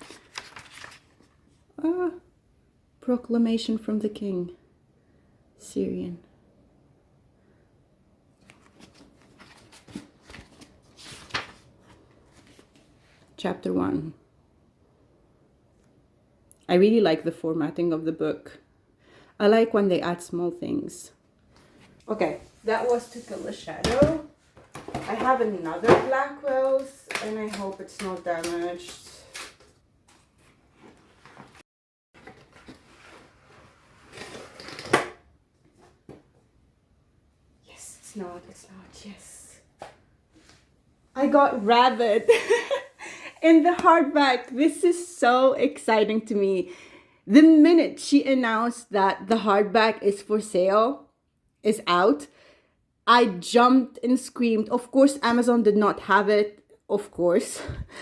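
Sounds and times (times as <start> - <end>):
book pages turning: 0.0 - 1.4, 8.4 - 12.9, 26.5 - 31.6
packaging rustling: 0.0 - 1.4.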